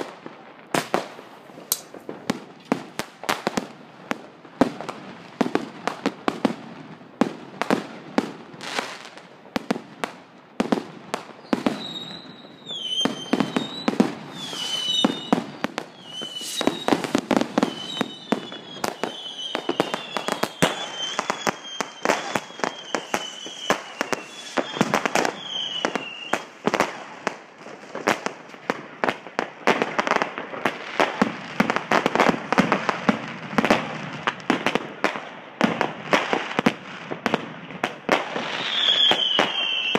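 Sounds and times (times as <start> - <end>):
fireworks and firecrackers banging: 0.0 - 39.9
whistles dropping in pitch: 11.9 - 15.3, 16.0 - 17.0.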